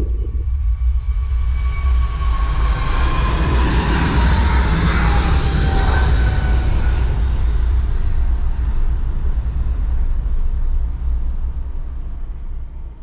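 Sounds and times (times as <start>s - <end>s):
jet engines rumbling: 0.0s - 0.8s.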